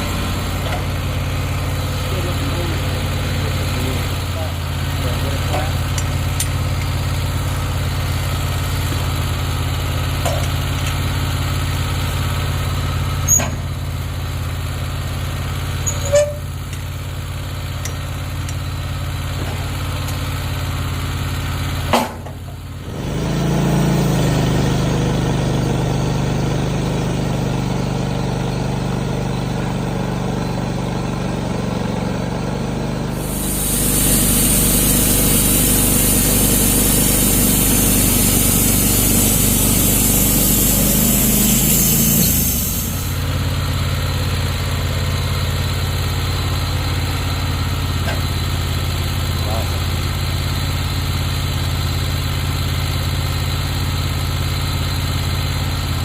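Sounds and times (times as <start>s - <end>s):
sawmill engine idling: 0.0s - 56.0s
band blade cutting log hiss: 33.2s - 43.3s.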